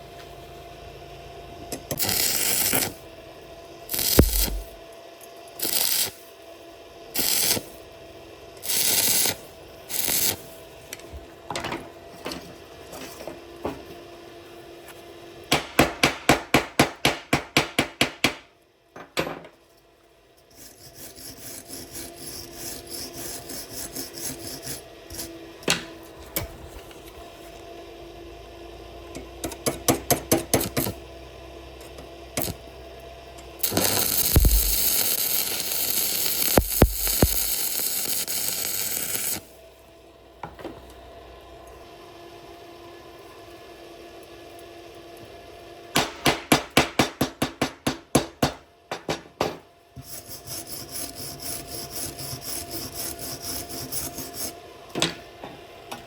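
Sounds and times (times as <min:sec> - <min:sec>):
faint buzz: 0:03.9 - 0:04.8
metal scraping strokes: 0:03.9 - 0:04.8, 0:33.6 - 0:37.8, 0:50.0 - 0:54.6
sharp knocks on metal: 0:04.2 - 0:04.8, 0:15.5 - 0:19.5, 0:46.0 - 0:49.7.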